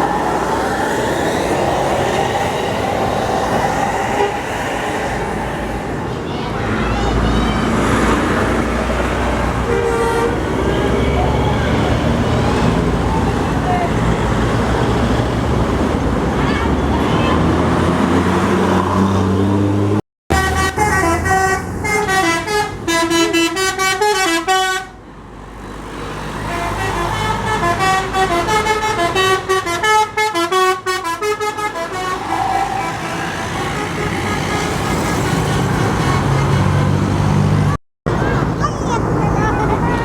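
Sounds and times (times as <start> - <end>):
bus engine: 0.0 - 40.0
traffic noise: 0.0 - 40.0
bus musical horn tune: 9.6 - 11.2, 20.3 - 25.0, 26.4 - 37.0.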